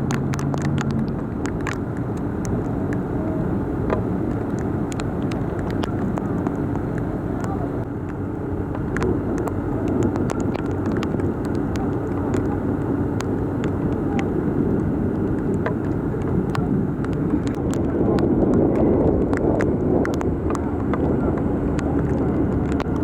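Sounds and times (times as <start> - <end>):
drops ticking: 0.0 - 17.8
heavy rain: 0.0 - 23.0
vehicles rumbling through floodwater: 0.0 - 23.0.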